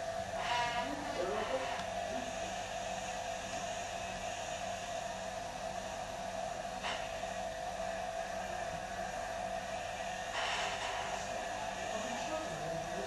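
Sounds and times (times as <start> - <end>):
constant hum: 0.0 - 13.0.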